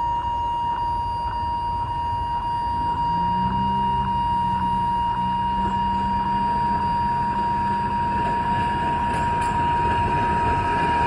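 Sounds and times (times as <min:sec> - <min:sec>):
level crossing bell ringing: 0:00.0 - 0:01.4
diesel locomotive rumble: 0:00.0 - 0:11.0.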